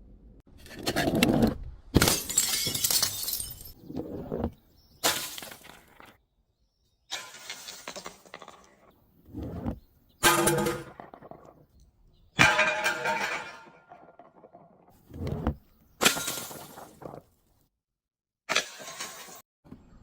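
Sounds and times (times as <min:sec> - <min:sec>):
glass bottles shattering: 0:02.0 - 0:03.9, 0:05.0 - 0:06.1, 0:12.4 - 0:14.4, 0:16.0 - 0:17.2.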